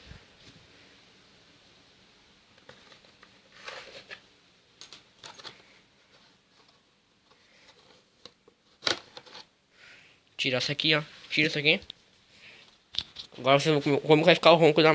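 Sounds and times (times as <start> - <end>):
rustling of parts handled: 4.8 - 9.5.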